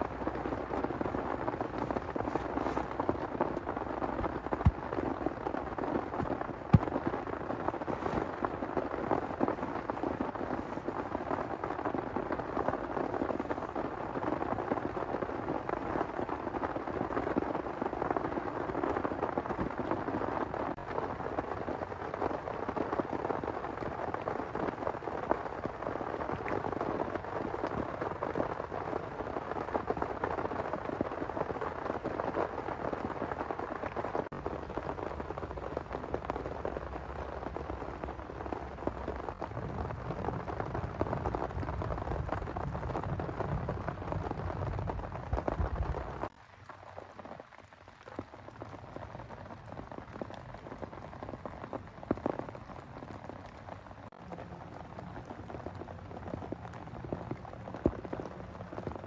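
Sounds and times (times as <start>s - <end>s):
heavy rain falling: 0.0s - 59.0s
low thunder rumble: 34.4s - 46.3s.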